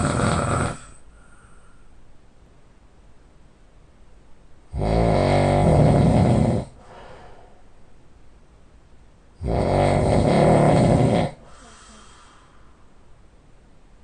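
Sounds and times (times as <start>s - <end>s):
man snoring: 0.0s - 1.0s, 4.7s - 6.8s, 9.4s - 12.3s
quiet breathing: 0.0s - 2.2s, 6.0s - 8.3s, 10.6s - 13.3s.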